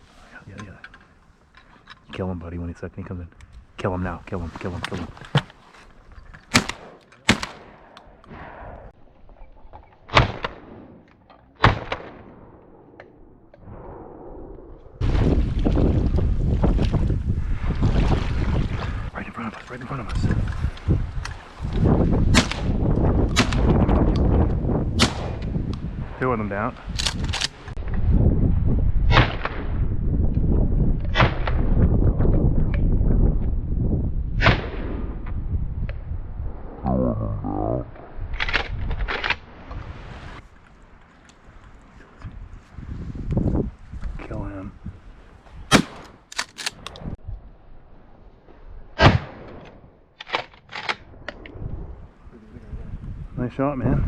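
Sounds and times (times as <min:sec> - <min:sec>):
shotgun shots: 0:06.5 - 0:08.8, 0:22.3 - 0:23.8, 0:25.0 - 0:25.4, 0:45.7 - 0:46.2
wind on microphone: 0:13.2 - 0:49.5, 0:50.9 - 0:54.0.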